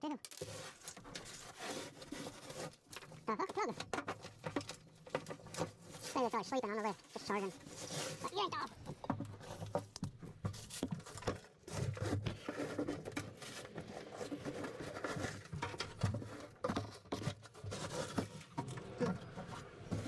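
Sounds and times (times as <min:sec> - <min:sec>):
leaves rustling and crinkling: 0:04.5 - 0:09.6.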